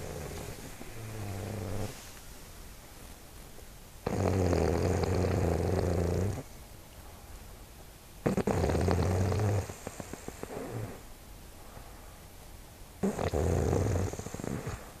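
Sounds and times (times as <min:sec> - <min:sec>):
person snoring: 0:00.0 - 0:02.0
quiet breathing: 0:00.0 - 0:02.4, 0:04.7 - 0:07.7, 0:09.4 - 0:12.5, 0:13.1 - 0:15.0.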